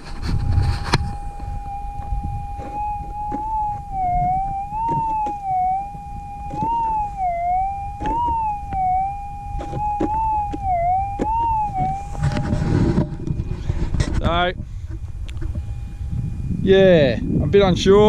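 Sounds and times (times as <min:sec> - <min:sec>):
metal detector tone: 0:00.0 - 0:14.4.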